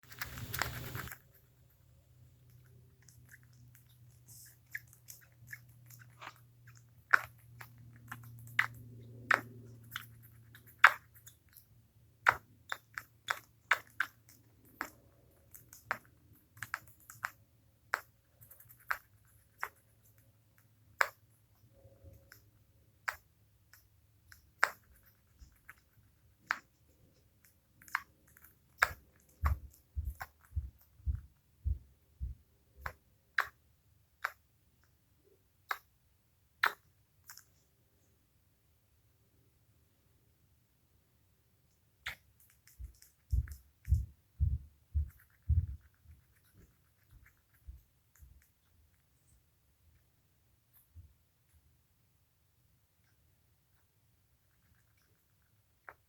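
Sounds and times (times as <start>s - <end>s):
hiccup clicks: 36.6s - 36.8s.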